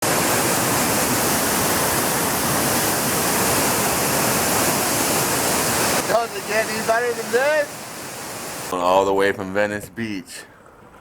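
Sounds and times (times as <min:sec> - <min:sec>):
waterfall roaring: 0:00.0 - 0:08.7.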